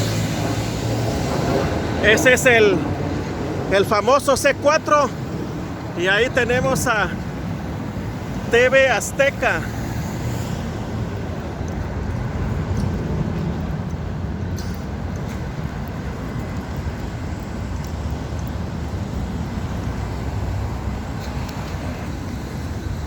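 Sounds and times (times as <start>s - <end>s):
traffic rumble and road noise: 0.0s - 23.0s.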